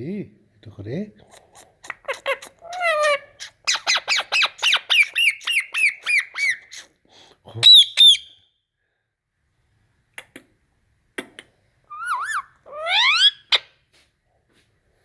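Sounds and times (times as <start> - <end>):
parakeet whistle-like call: 7.6 - 8.4
parakeet rising call: 11.9 - 13.6.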